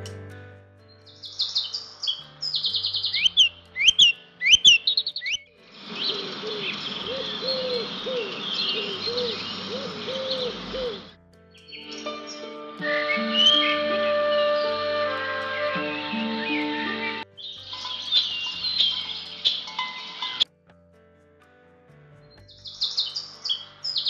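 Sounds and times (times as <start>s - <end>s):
recorded birdsong: 0.8s - 20.4s, 22.2s - 24.0s
repeated low bird call: 1.1s - 11.1s, 11.7s - 20.4s.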